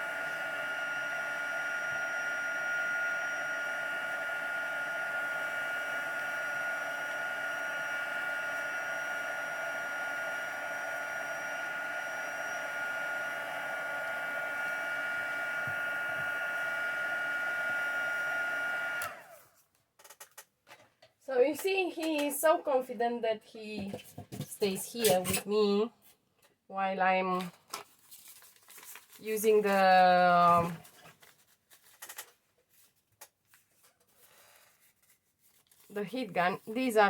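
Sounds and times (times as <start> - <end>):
heat gun whining: 0.0 - 19.4, 29.4 - 30.9.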